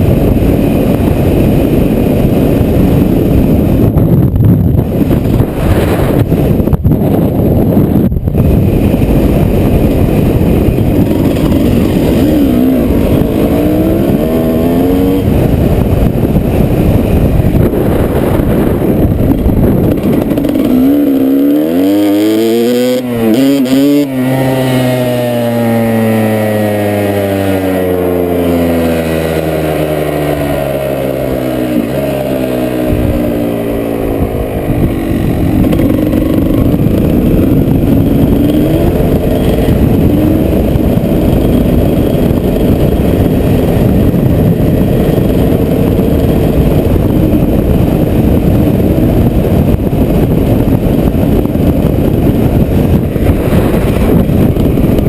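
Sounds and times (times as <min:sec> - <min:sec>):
wind buffeting microphone: 0:00.0 - 0:55.0
vehicle engine passing: 0:19.7 - 0:45.6.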